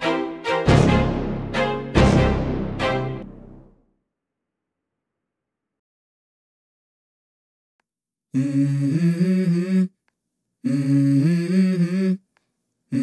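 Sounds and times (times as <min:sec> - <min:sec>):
hummed vocal phrase: 0:08.4 - 0:10.0, 0:10.6 - 0:12.2.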